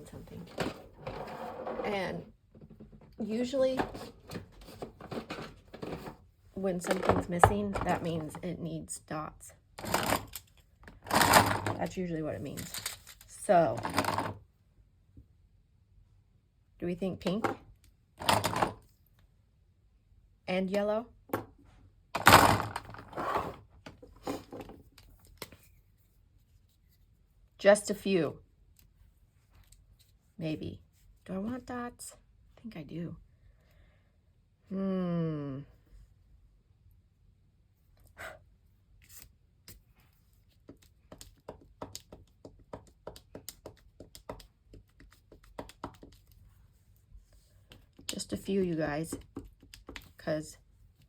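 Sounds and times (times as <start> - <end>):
craft supplies rustling and clattering: 3.7 - 8.0
pen tapping on paper: 40.6 - 46.3.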